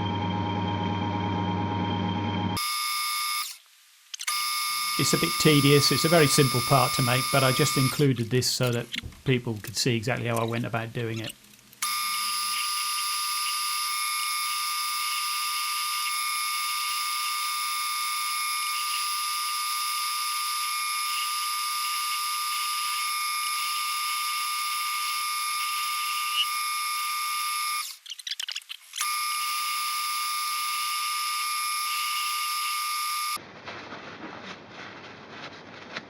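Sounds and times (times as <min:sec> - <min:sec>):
metal lathe whining: 0:04.7 - 0:08.0.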